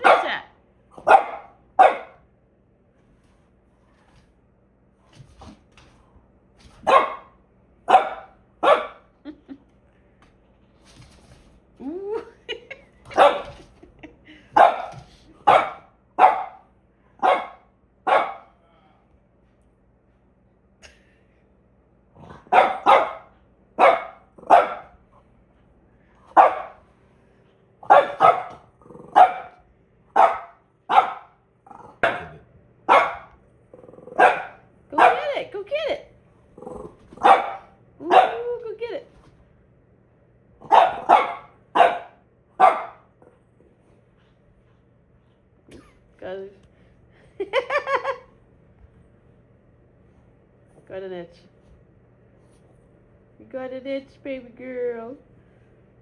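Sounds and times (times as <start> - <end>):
dog barking: 0.0 - 2.2, 6.8 - 9.1, 13.1 - 13.6, 14.6 - 18.6, 22.4 - 25.0, 26.3 - 26.8, 27.8 - 31.4, 32.0 - 33.4, 34.2 - 35.4, 37.2 - 38.5, 40.6 - 43.1.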